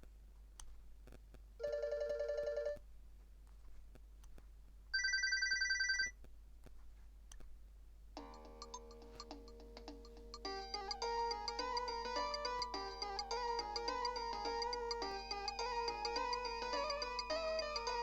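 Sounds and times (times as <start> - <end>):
melodic ringtone notes: 8.2 - 18.0.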